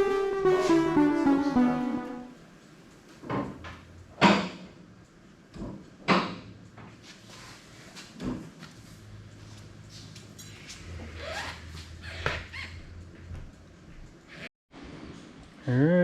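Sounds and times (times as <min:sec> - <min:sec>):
background music: 0:00.0 - 0:02.5.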